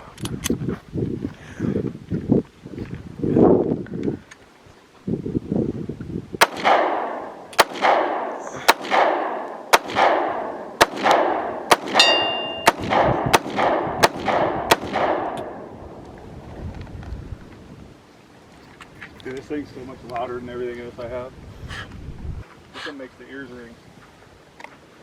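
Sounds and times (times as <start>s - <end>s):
handgun shots with rolling echo: 6.4s - 15.8s
steel target ringing: 11.3s - 12.8s.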